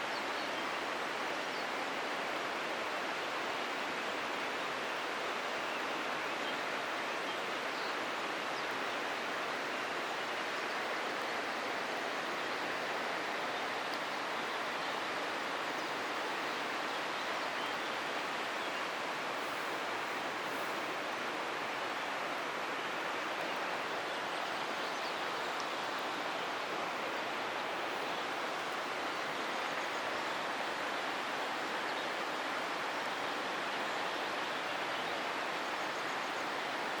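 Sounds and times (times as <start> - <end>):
stream water rushing: 0.0 - 37.0.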